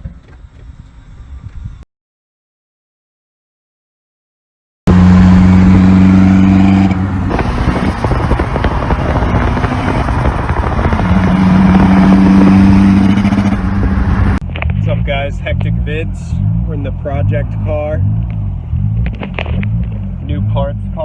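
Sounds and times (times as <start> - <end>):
car engine droning: 4.9 - 21.0.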